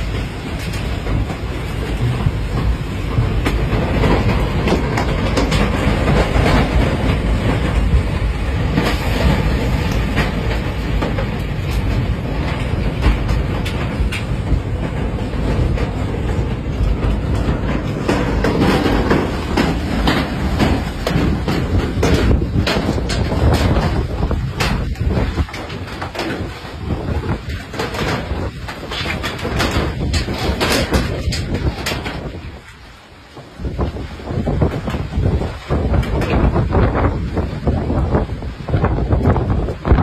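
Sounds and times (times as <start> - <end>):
tornado wind roaring: 0.0 - 40.0
sharp cracks and knocks: 15.7 - 32.8.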